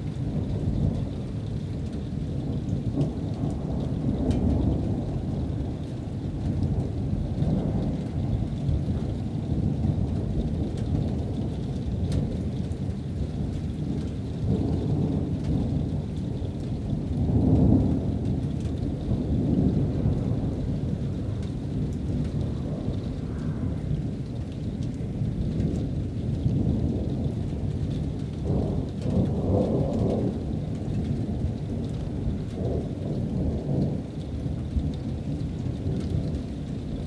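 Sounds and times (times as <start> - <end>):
distant thunder rumbling: 17.0 - 24.4.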